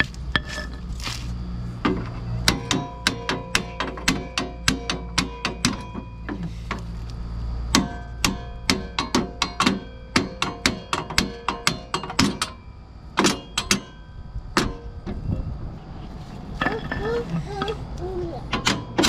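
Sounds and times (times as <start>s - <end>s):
hammer striking steel pin: 2.4s - 6.2s, 7.7s - 12.6s, 13.2s - 14.0s.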